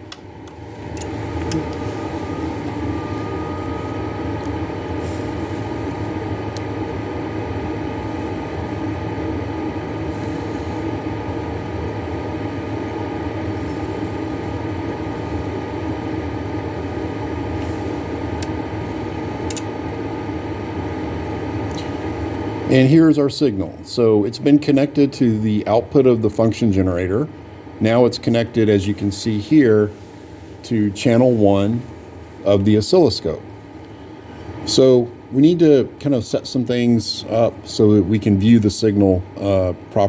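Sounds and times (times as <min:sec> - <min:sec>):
cooling fan whirring: 0:00.0 - 0:40.0.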